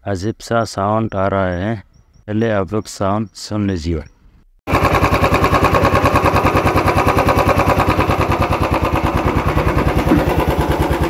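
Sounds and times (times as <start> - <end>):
tappet ticking: 0.0 - 4.3
motorcycle engine idling: 4.7 - 11.0.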